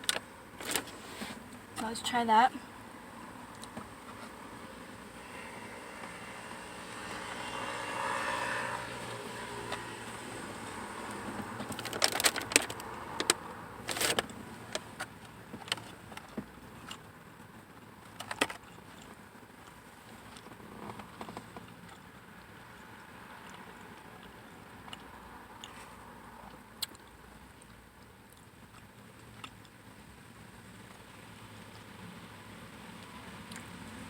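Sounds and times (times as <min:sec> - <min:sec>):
vehicle hum: 0:00.0 - 0:34.0
paper wrapper crackling: 0:11.6 - 0:14.9.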